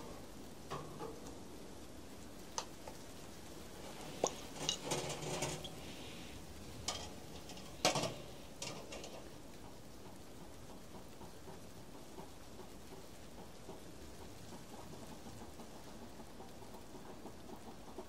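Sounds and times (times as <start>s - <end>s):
faint steady hiss: 0.0s - 18.0s
utensils clinking against metal pans: 4.2s - 5.8s.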